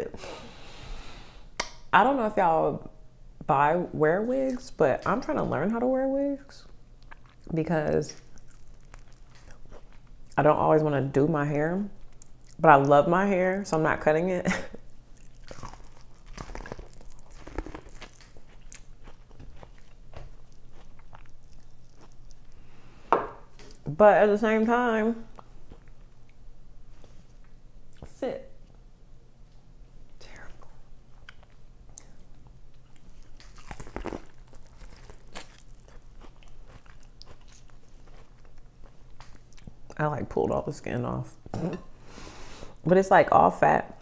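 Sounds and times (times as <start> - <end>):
person chewing food: 7.0 - 10.4, 14.9 - 23.0, 30.3 - 40.0
small crunches: 8.1 - 10.1, 15.2 - 22.6, 32.8 - 39.7.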